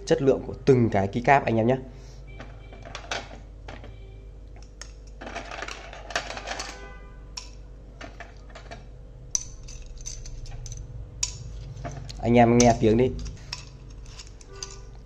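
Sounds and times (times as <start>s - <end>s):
faint steady hum: 0.0s - 15.0s
plastic keycaps clattering: 4.8s - 6.8s.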